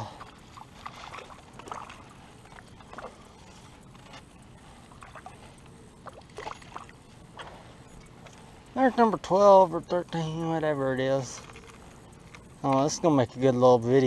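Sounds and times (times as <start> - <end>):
faint water splashes: 0.0 - 9.3.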